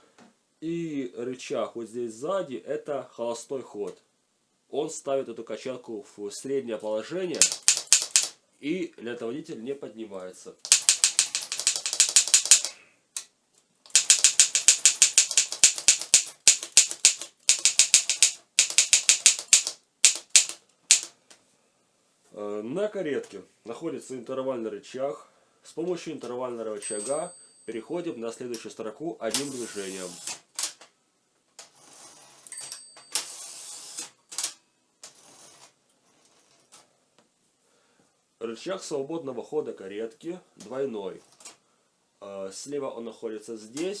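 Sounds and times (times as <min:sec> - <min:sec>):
typewriter keys clacking: 0:07.3 - 0:08.4, 0:10.7 - 0:12.8, 0:13.9 - 0:21.1.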